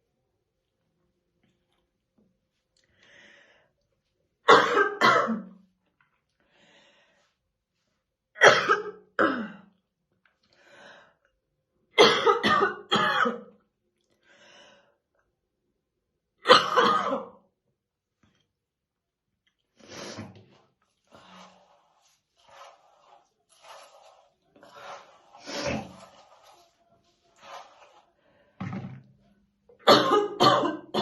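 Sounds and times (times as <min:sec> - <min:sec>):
woman coughing heavily: 0:04.5 - 0:05.5, 0:08.4 - 0:09.6, 0:12.0 - 0:13.4, 0:16.5 - 0:17.3, 0:29.8 - 0:31.0.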